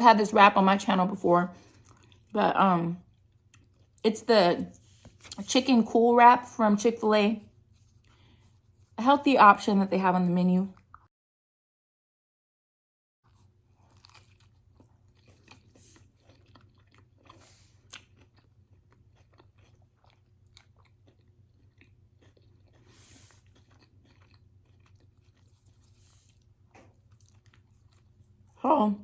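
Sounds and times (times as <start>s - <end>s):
person chewing: 1.6s - 2.3s, 3.0s - 4.0s, 13.3s - 28.6s.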